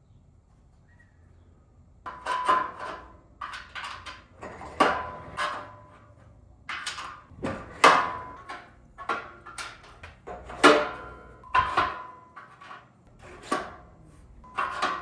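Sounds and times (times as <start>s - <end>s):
steel parts clanking: 6.7s - 15.0s.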